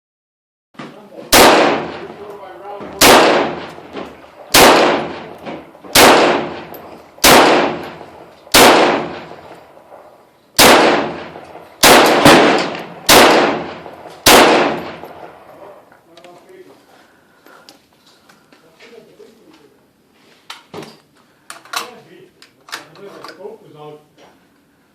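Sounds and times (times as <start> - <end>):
rifle shots with echo: 1.3 - 15.6.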